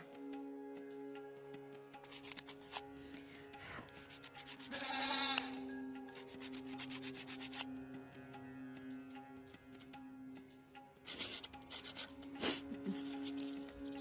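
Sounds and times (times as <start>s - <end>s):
background music: 0.0s - 14.0s
sanding strokes on a surface: 4.0s - 4.8s, 6.2s - 7.6s, 11.1s - 13.5s.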